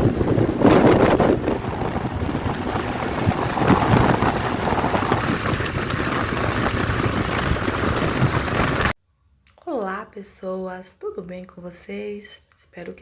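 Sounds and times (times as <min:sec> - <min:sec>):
vehicle rumble on road: 0:00.0 - 0:09.0
wind buffeting microphone: 0:00.0 - 0:09.0.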